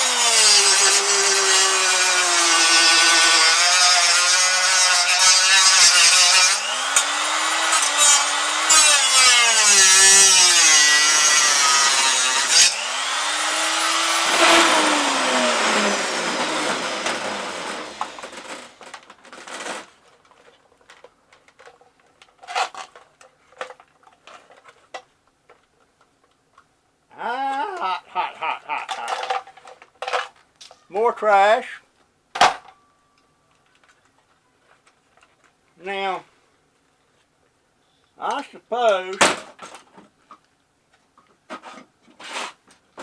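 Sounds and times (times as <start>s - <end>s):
cut-off tool cutting with whine: 0.0s - 18.8s.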